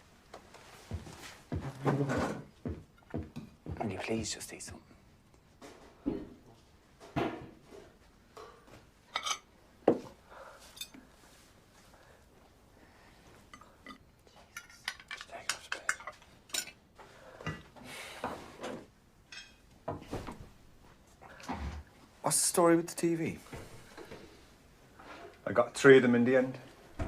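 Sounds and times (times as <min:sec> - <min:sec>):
cutlery clinking against plates: 0:08.4 - 0:09.5, 0:13.5 - 0:16.8, 0:19.3 - 0:19.6.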